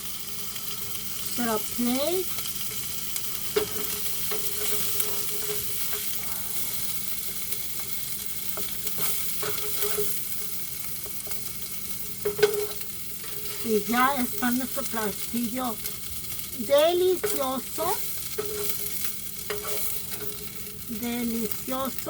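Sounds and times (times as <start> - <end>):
food sizzling in a skillet: 0.0 - 22.0
utensil scraping a pan: 2.8 - 22.0.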